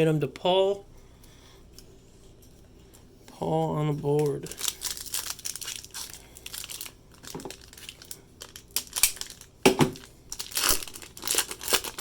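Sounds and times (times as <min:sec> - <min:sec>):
foil wrappers crinkling: 0:04.0 - 0:12.0.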